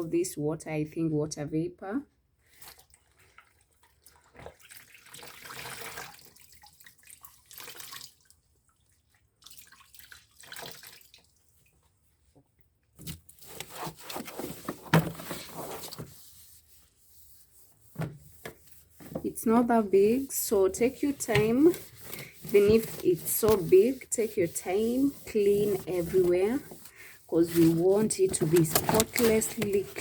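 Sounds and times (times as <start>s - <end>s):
wet cloth being wrung out: 2.5s - 11.8s
water splashing and dripping: 2.6s - 11.9s.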